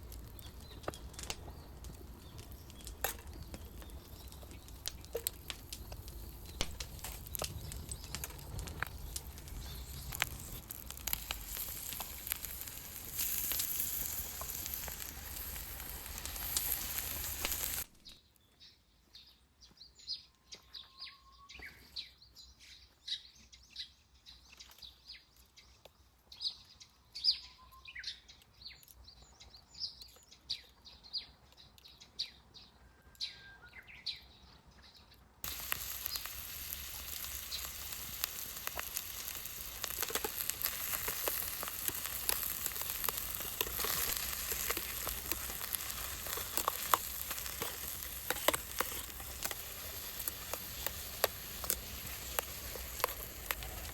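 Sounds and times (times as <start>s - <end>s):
campfire crackling: 0.0s - 18.2s, 35.4s - 53.9s
small birds chirping: 0.0s - 53.9s.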